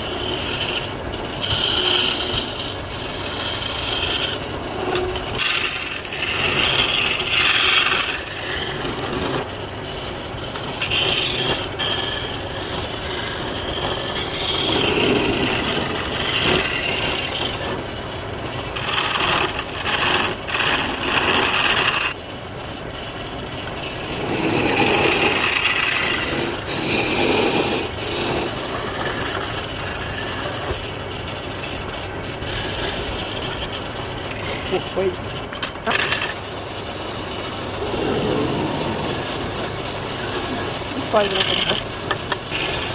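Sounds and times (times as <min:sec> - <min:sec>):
tool rasping into wood: 0:00.0 - 0:09.5, 0:10.5 - 0:17.8, 0:18.8 - 0:22.2, 0:24.0 - 0:30.8, 0:32.4 - 0:35.0, 0:41.1 - 0:42.9.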